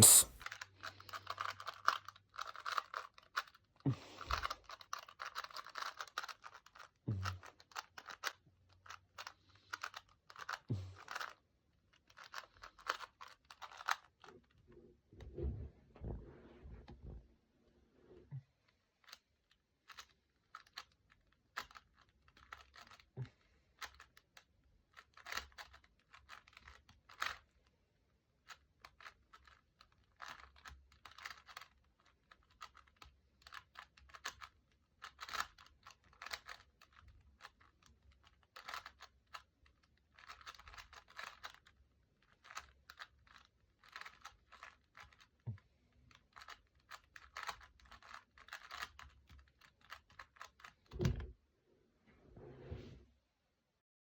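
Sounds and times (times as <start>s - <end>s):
plastic puzzle cube clicking: 38.6s - 39.4s, 40.2s - 41.7s, 42.4s - 45.3s, 46.3s - 50.8s.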